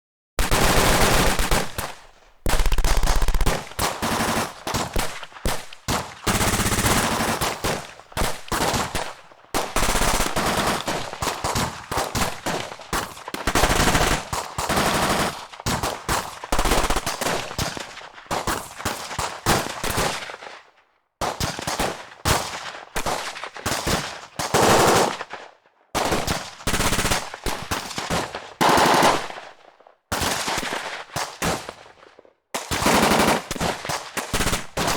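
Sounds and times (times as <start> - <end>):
automatic gunfire bursts: 0.4 - 17.7, 23.1 - 25.3, 26.0 - 29.5, 32.6 - 34.9.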